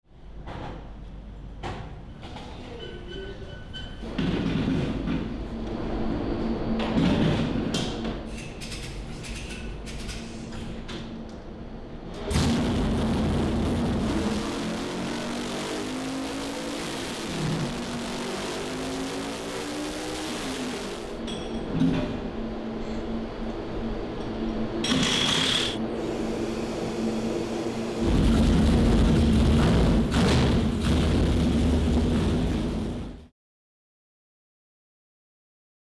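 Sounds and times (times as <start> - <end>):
race engine running loudly: 12.3 - 21.2
steady hum: 12.3 - 21.2, 24.8 - 33.2.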